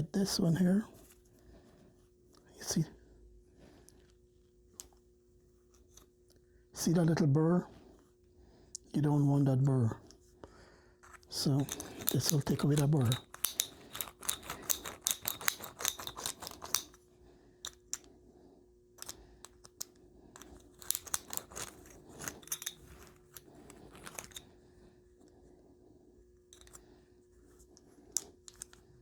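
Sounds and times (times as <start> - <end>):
metal scraping clicks on pipe: 11.1 - 17.0.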